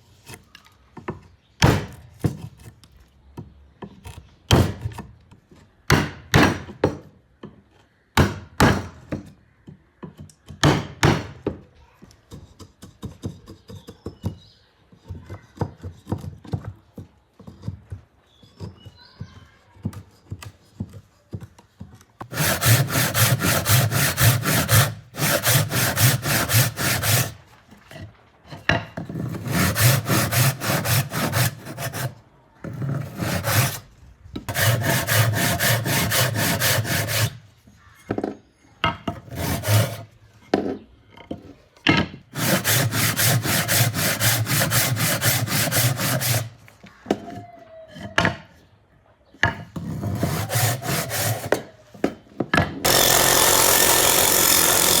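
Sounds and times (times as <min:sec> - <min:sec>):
hand saw cutting wood: 0:22.2 - 0:28.1, 0:29.0 - 0:37.5, 0:39.2 - 0:40.2, 0:42.3 - 0:46.6, 0:49.8 - 0:51.7, 0:52.8 - 0:55.0.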